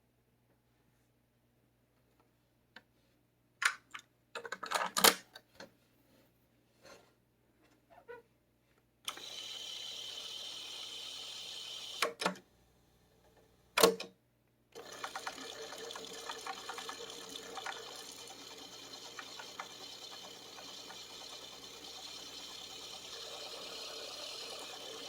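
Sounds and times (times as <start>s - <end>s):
cassette tape mechanism whirring: 9.1s - 12.3s, 14.8s - 25.0s.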